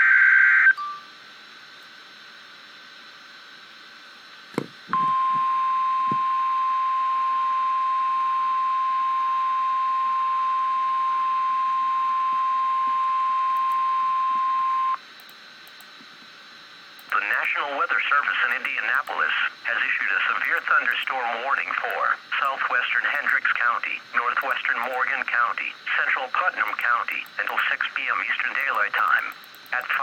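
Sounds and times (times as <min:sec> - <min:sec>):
steady alarm beep tone: 0:04.9 - 0:15.0
click: 0:15.2 - 0:15.9, 0:17.0 - 0:17.2, 0:28.6 - 0:29.9
radio hiss: 0:16.0 - 0:30.0.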